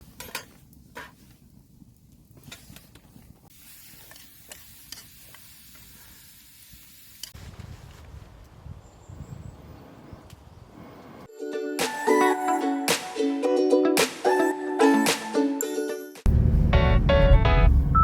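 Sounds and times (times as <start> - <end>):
fire crackles and clicks: 0.0 - 8.6.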